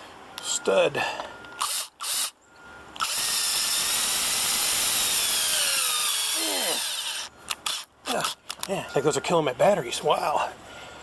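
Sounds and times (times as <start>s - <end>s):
cordless drill whining: 1.6s - 2.3s, 3.0s - 8.4s.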